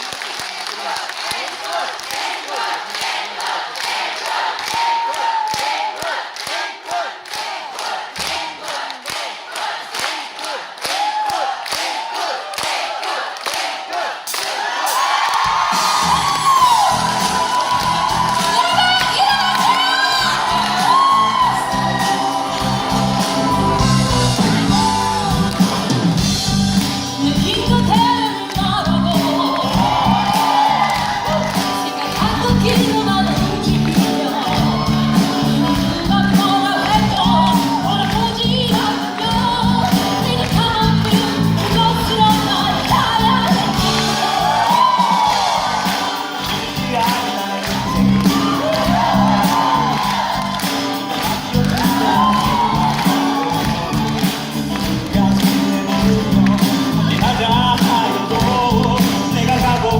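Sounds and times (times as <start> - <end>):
people singing: 0.6 - 10.8, 16.9 - 59.9
audience whooping and cheering: 4.4 - 6.3, 10.8 - 59.9
rock band playing: 15.0 - 59.9.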